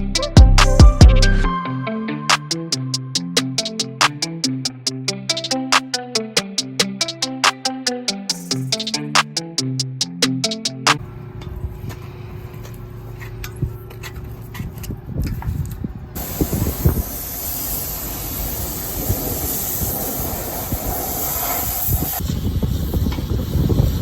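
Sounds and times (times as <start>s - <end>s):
scattered clicks: 3.4s - 11.0s
pressure washer spray hissing: 16.2s - 24.0s.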